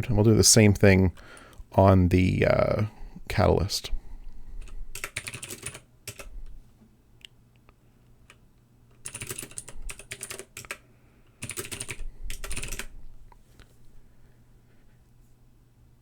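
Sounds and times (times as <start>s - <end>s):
computer keyboard typing: 4.6s - 6.3s, 9.0s - 10.8s, 11.4s - 12.9s.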